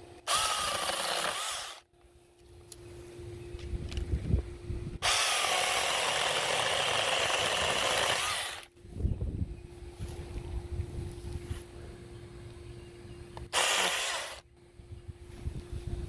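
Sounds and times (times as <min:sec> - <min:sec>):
mini chainsaw cutting branch: 0:00.2 - 0:01.8, 0:05.0 - 0:08.7, 0:13.5 - 0:14.4
wind rumbling on microphone: 0:03.5 - 0:05.1, 0:08.8 - 0:12.0, 0:14.6 - 0:16.0.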